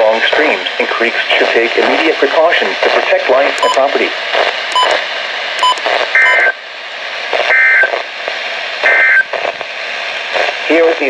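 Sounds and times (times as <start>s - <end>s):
radio hiss: 0.0s - 11.0s
sharp clicks: 3.6s - 3.8s, 4.7s - 5.0s, 5.6s - 5.9s.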